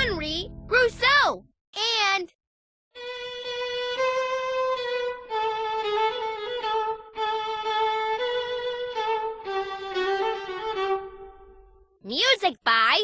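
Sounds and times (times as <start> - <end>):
solo violin melody: 3.0 - 11.9.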